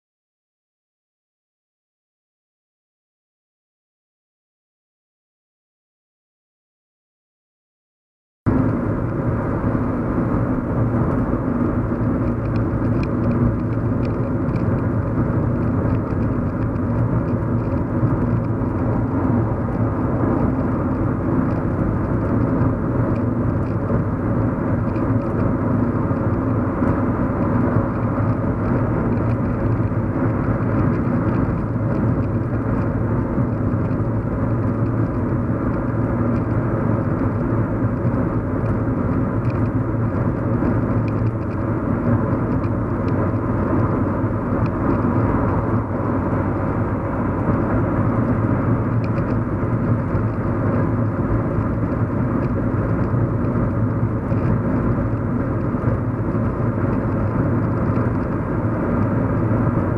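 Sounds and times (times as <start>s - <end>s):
car engine and road noise: 8.5s - 59.9s.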